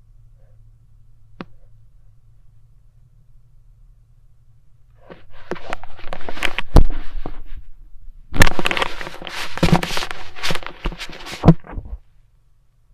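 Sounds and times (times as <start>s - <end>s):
stethoscope scratchy crackling: 5.0s - 12.0s
stethoscope thumps: 8.4s - 12.0s.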